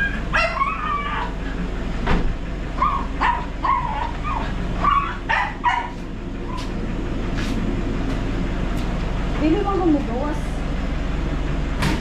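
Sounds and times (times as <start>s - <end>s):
dog whining and yipping: 0.0s - 1.6s, 2.8s - 6.0s
steady low hum: 0.0s - 12.0s.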